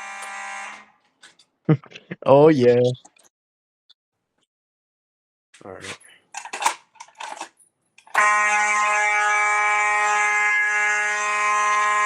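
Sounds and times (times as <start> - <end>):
fire alarm horn: 0.0 - 0.9, 8.1 - 12.0.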